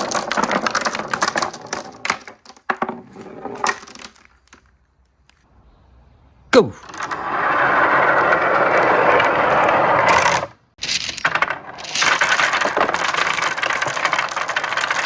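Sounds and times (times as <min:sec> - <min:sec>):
marbles clattering down a track: 0:00.0 - 0:02.9, 0:06.9 - 0:15.0.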